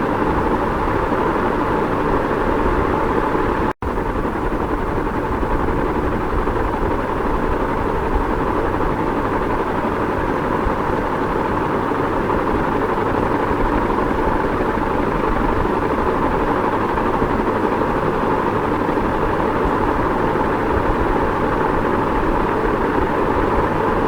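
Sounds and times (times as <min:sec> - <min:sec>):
ceiling fan whooshing hum: 0:00.0 - 0:24.0.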